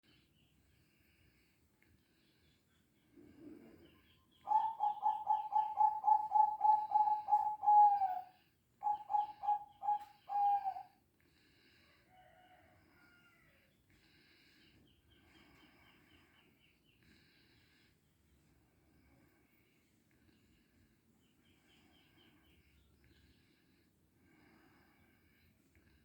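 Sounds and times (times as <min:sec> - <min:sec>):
dove calling: 0:04.4 - 0:11.0.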